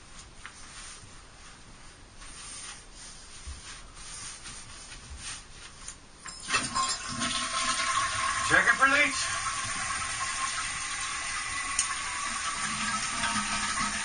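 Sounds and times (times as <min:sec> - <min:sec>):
faint rubbing and rustling: 0:00.0 - 0:06.2.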